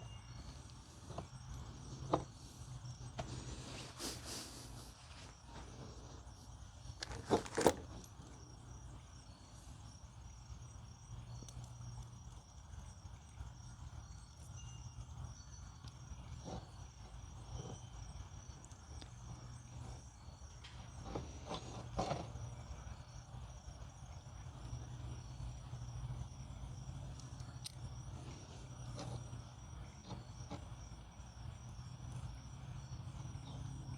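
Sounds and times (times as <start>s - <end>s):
insect chirping: 0.0s - 33.9s
steady low hum: 0.0s - 33.9s.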